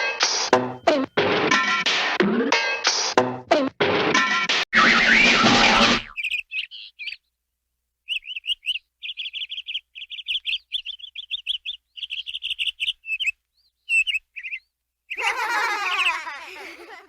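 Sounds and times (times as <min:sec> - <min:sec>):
loud noisy sound effect: 0:04.8 - 0:06.1
high bird-like chirps: 0:04.8 - 0:07.3, 0:08.1 - 0:16.3.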